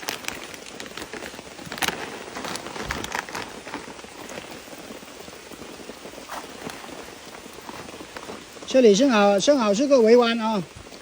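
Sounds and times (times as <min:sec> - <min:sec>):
rain pattering: 0:00.0 - 0:11.0.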